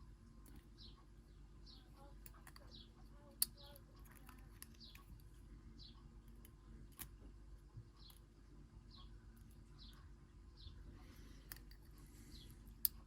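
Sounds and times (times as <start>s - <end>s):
steady low hum: 0.0s - 13.0s
faint small bird chirps: 0.5s - 5.1s, 5.7s - 6.1s, 7.8s - 8.3s, 8.9s - 11.5s
clicks of small parts handled: 2.2s - 2.8s, 3.4s - 5.4s, 11.4s - 11.9s.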